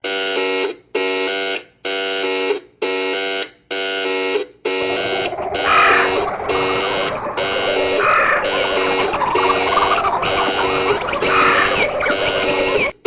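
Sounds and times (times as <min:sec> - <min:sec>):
buzzy electronic alarm beeps: 0:04.7 - 0:13.0
rough noisy layer: 0:04.7 - 0:13.0.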